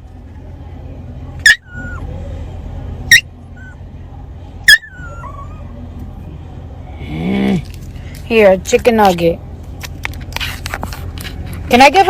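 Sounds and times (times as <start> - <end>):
dog yelping: 1.4 - 2.1, 3.1 - 3.8, 4.6 - 5.8.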